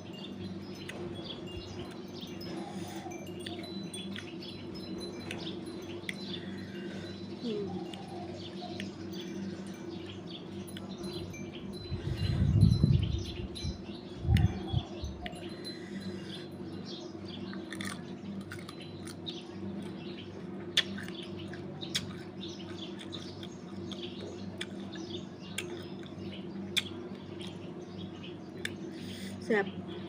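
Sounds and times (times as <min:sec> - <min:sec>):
steady low hum: 0:00.0 - 0:30.0
person chewing: 0:17.6 - 0:19.2, 0:20.7 - 0:24.0, 0:25.6 - 0:27.0.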